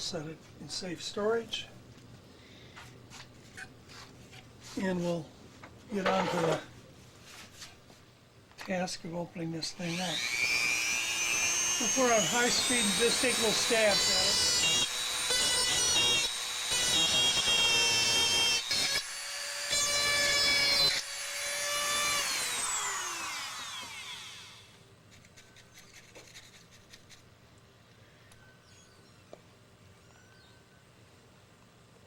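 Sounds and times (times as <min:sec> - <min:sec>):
rotary tool grinding plastic: 0:21.6 - 0:27.3.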